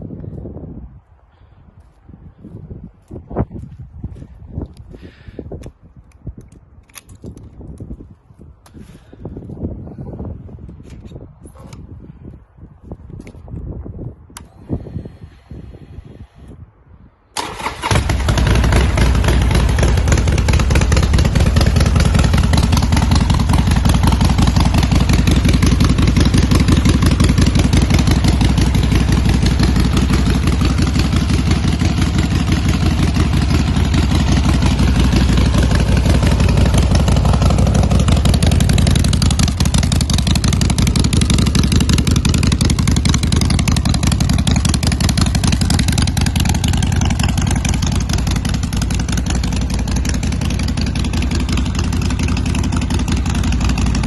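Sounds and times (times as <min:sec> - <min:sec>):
motorcycle engine running: 0:17.4 - 0:54.0.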